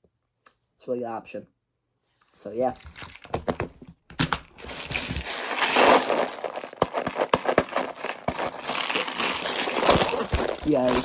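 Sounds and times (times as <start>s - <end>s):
plastic packaging crinkling: 4.2s - 11.0s.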